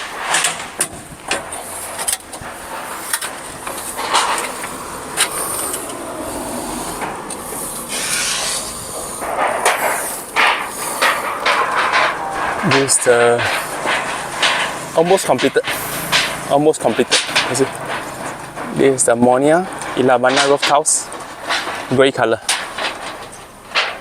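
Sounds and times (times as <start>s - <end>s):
steady rushing noise: 0.2s - 14.4s
roof tiles knocking and clattering: 9.2s - 24.0s.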